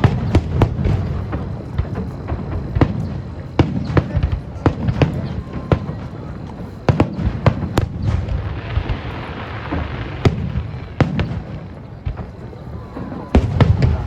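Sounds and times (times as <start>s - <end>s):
fireworks bangs: 0.0s - 14.0s
fireworks crackling hiss: 0.0s - 14.0s.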